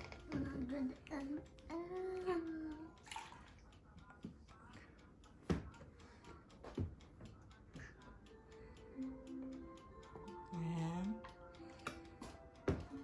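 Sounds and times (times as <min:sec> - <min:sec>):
milk glugging and dripping: 0:03.0 - 0:03.6.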